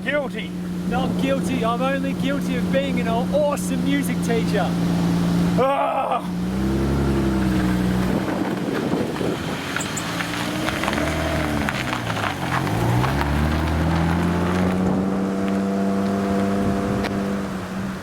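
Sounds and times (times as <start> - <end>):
vehicle engine running: 0.0 - 18.0
wind noise on microphone: 6.6 - 18.0.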